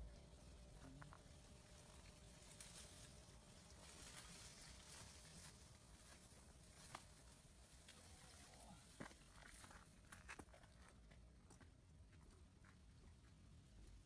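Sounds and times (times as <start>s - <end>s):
faint background hiss: 0.0s - 10.4s.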